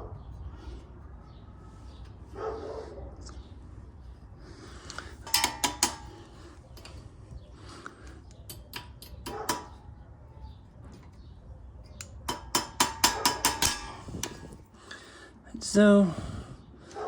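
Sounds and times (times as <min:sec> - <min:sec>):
pliers clinking on metal pin: 0:05.2 - 0:06.2, 0:08.3 - 0:09.8, 0:11.9 - 0:15.0.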